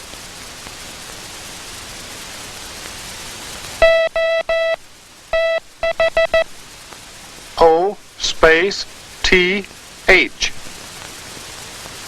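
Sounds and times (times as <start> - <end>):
hiss: 0.0 - 3.8, 4.8 - 5.8, 6.5 - 12.0
morse code beeps: 3.8 - 4.8, 5.4 - 6.5.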